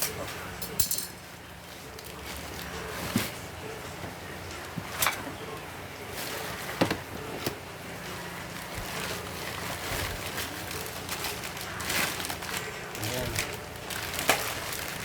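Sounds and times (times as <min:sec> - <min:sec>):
packaging rustling and crinkling: 0:08.3 - 0:15.0.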